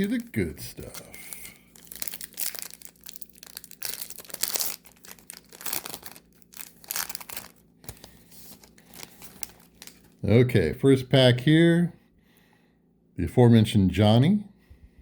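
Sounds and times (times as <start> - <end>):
wrapper crinkling and tearing: 0.0 - 10.2.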